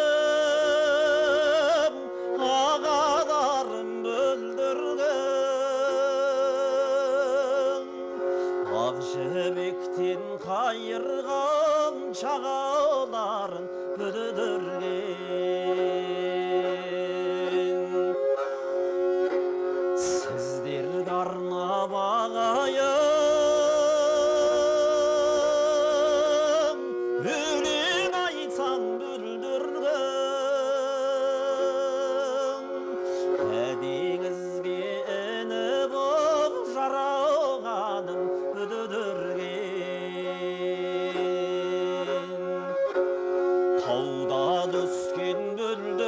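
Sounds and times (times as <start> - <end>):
bowed fiddle melody: 0.0 - 46.0
person singing with vibrato: 20.0 - 43.0.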